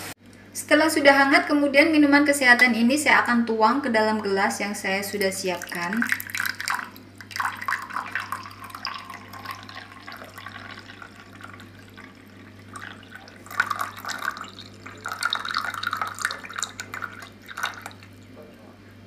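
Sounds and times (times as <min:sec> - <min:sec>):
liquid pouring into a glass: 0:05.1 - 0:18.6.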